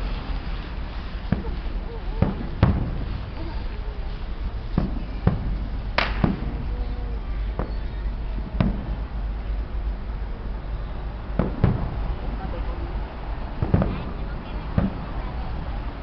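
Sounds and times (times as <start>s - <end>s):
fireworks bangs and pops: 0.0s - 10.0s, 11.3s - 12.8s, 13.4s - 16.0s
low background rumble: 0.0s - 16.0s.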